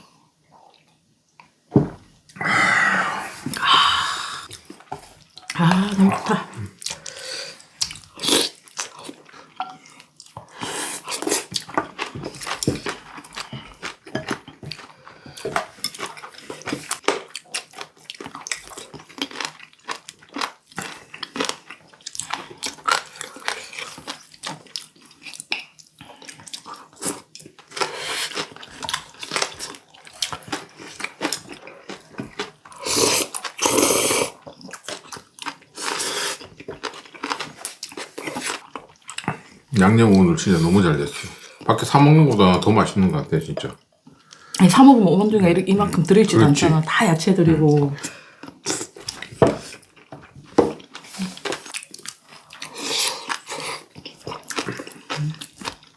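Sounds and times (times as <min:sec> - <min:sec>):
crunchy chewing: 0:10.1 - 0:39.7, 0:48.4 - 0:55.9.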